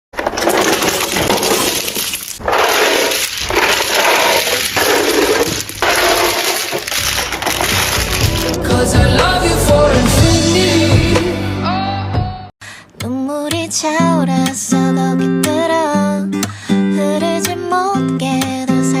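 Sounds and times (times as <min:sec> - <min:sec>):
packaging crackling: 0:00.2 - 0:08.7.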